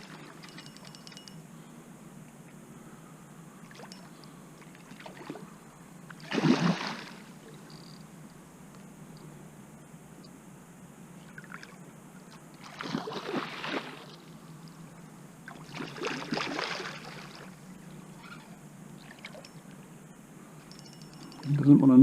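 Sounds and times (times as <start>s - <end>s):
fish thrashing water splashing: 6.2s - 7.3s, 12.6s - 14.1s.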